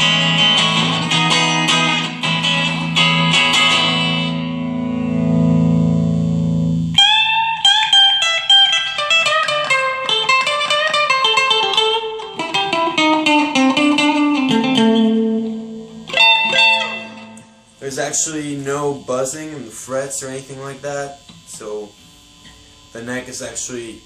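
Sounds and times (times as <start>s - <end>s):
electric guitar playing: 0.0s - 23.1s.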